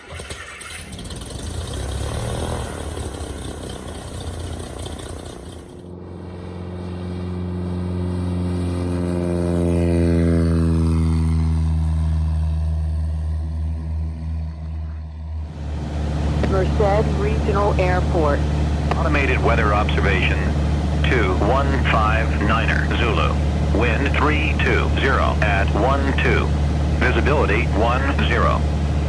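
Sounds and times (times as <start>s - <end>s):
aircraft piston engine droning: 15.5s - 29.0s.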